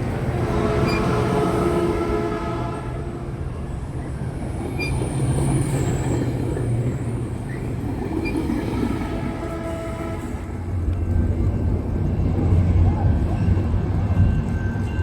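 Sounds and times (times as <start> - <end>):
train low rumble: 0.0 - 15.0.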